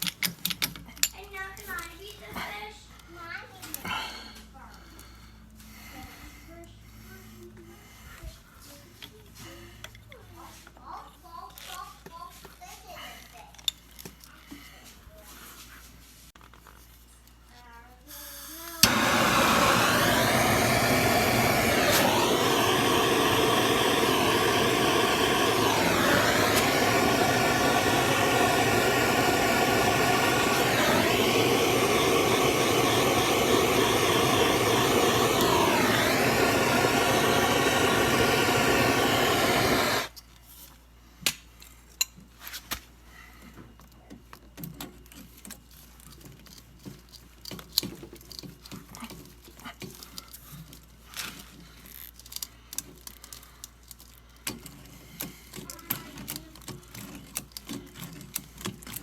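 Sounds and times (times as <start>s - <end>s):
heat gun whining: 18.1s - 40.1s
faint clicks and handling noises: 40.2s - 59.0s.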